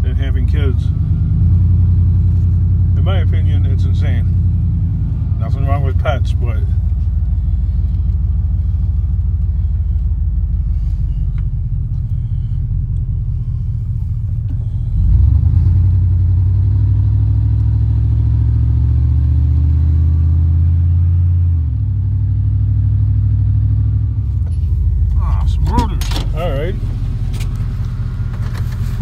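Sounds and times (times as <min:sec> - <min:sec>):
truck engine droning: 0:00.0 - 0:29.0.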